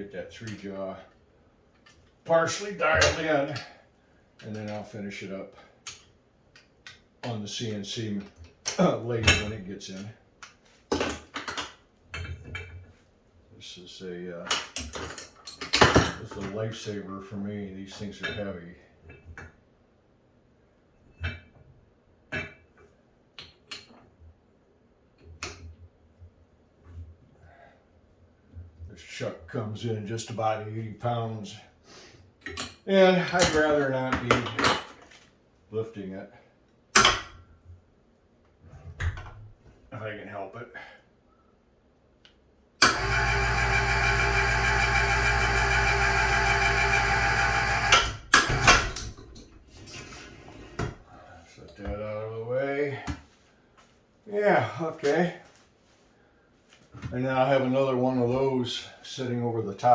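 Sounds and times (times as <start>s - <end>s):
electric hoist motor running: 42.8s - 49.0s.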